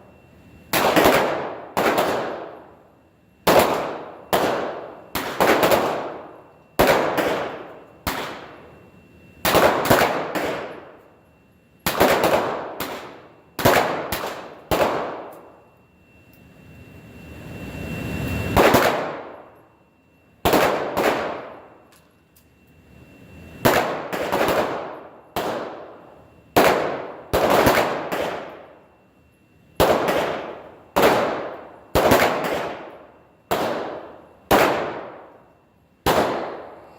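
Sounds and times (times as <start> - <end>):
pistol shots echoing: 0.7 - 2.7, 3.5 - 8.6, 9.4 - 10.9, 11.9 - 15.5, 20.4 - 21.6, 23.6 - 25.9, 26.6 - 28.6, 29.8 - 35.3, 36.0 - 36.8.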